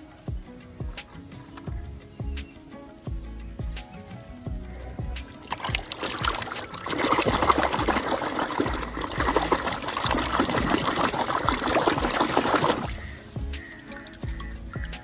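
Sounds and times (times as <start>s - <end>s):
water running and splashing: 5.0s - 15.0s.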